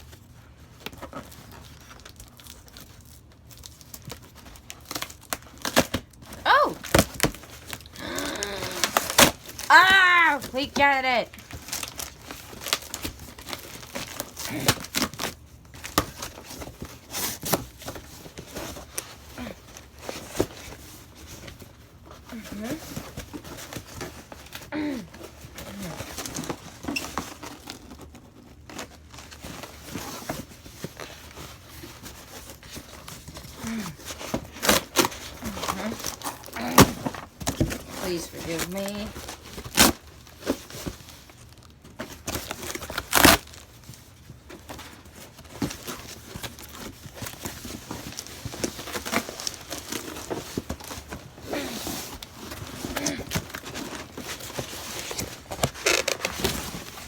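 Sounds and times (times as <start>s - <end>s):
packing material rustling: 0.0s - 57.0s
knocks and thumps of packaging: 6.8s - 7.8s, 32.6s - 41.2s.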